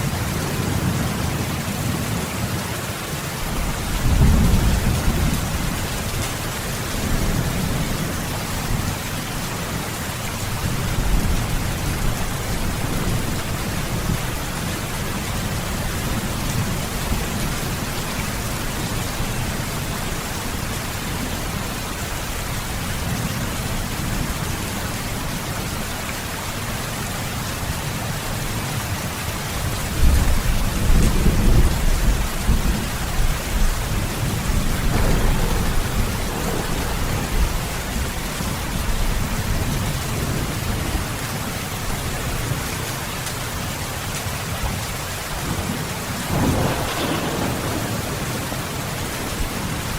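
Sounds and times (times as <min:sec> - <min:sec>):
steady rain falling: 0:00.0 - 0:49.9
low thunder rumbling: 0:03.4 - 0:09.8, 0:29.9 - 0:42.6, 0:45.4 - 0:49.9.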